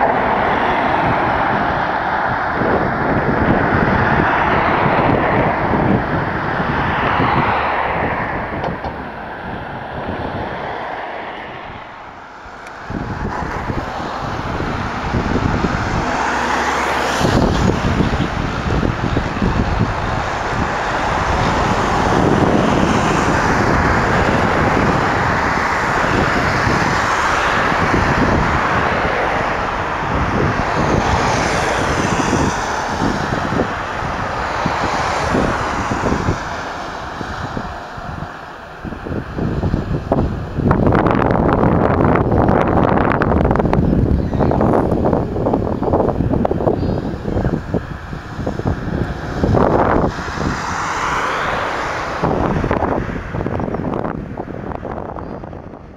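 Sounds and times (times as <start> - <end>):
aircraft engine: 0.0 - 55.9
wind buffeting microphone: 0.0 - 55.9.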